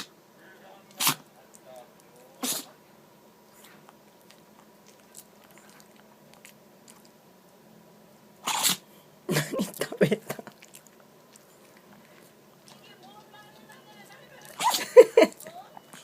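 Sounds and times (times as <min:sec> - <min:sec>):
dog sneezing: 0:00.9 - 0:01.3, 0:02.4 - 0:02.8, 0:08.4 - 0:09.8, 0:14.6 - 0:14.9.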